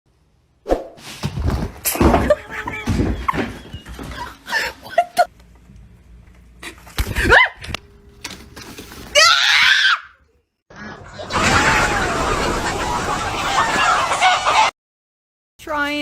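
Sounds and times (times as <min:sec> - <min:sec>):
people laughing: 0:03.2 - 0:05.3, 0:10.8 - 0:14.7
people screaming: 0:09.2 - 0:10.2, 0:10.8 - 0:14.7.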